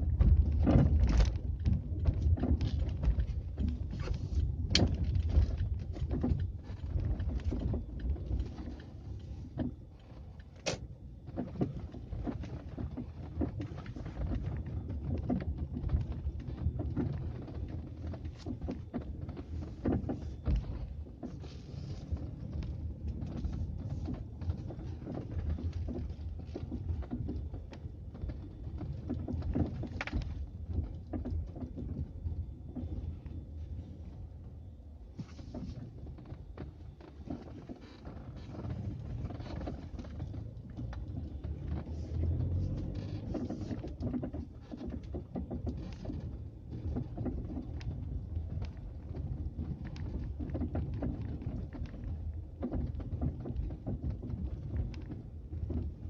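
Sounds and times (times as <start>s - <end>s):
steady low rumble: 0.0s - 37.8s.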